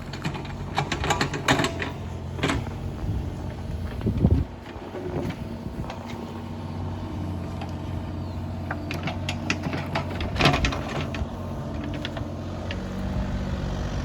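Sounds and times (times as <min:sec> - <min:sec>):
sharp metallic clanks and knocks: 0:00.0 - 0:02.9
excavator engine running: 0:00.0 - 0:14.0.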